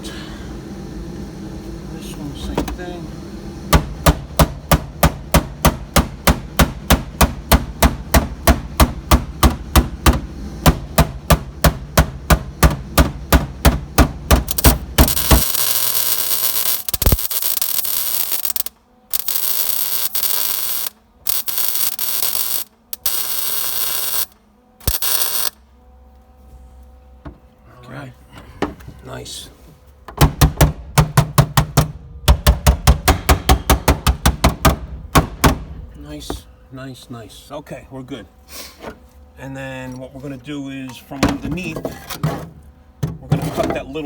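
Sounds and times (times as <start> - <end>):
metal being hammered: 3.7 - 15.4, 30.2 - 35.8
harsh steady hiss: 14.4 - 25.6.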